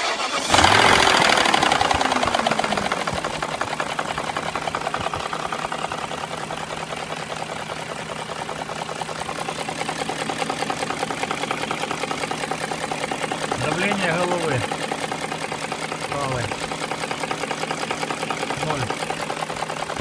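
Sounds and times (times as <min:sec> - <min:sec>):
car engine idling: 0:00.0 - 0:20.0
fast even rattling knock: 0:03.0 - 0:06.0.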